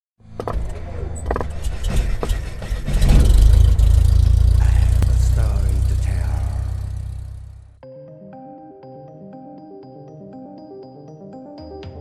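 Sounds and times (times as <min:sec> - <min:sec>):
low engine rumble: 0:00.6 - 0:07.8.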